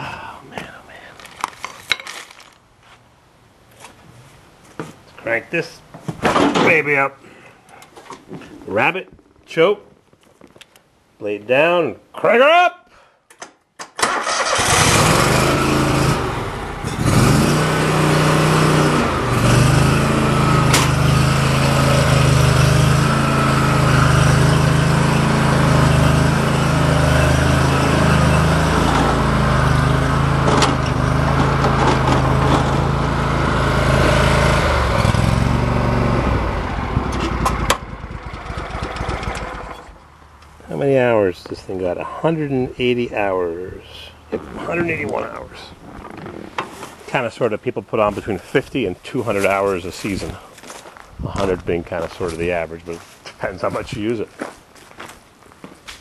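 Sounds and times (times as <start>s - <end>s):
lawn mower engine running: 14.0s - 40.6s.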